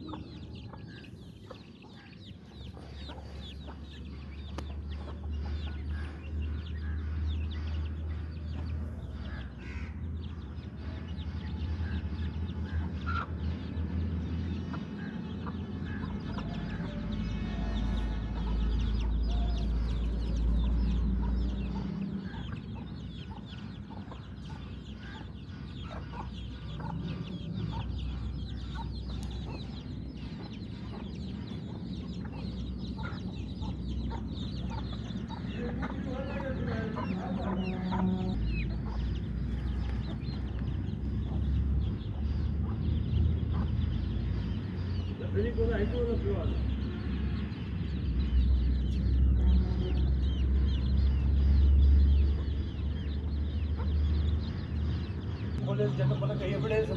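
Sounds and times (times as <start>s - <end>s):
chickens clucking and calling: 0.0s - 56.9s
steady low rumble: 25.6s - 44.7s.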